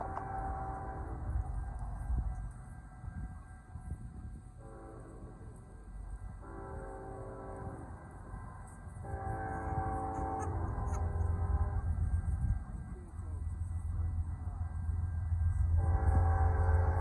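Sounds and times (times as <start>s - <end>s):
locomotive air horn blasts: 0.0s - 1.4s, 4.6s - 5.4s, 6.4s - 8.0s, 9.0s - 12.0s, 15.7s - 17.0s
low train rumble: 0.0s - 17.0s.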